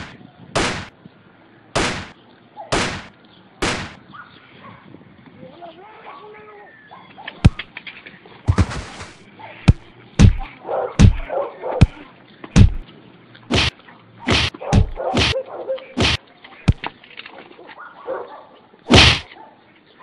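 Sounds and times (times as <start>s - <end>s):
sharp loud bangs: 0.0s - 1.0s, 1.8s - 4.1s, 8.5s - 12.0s, 12.6s - 12.8s, 13.5s - 13.7s, 14.3s - 15.4s, 16.0s - 16.8s, 18.9s - 19.3s
faint rustling: 7.2s - 14.0s.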